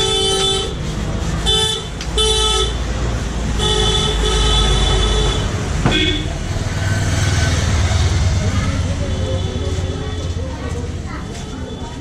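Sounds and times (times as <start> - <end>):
low traffic rumble: 0.0 - 12.0
two-tone vehicle horn honking: 3.6 - 6.3.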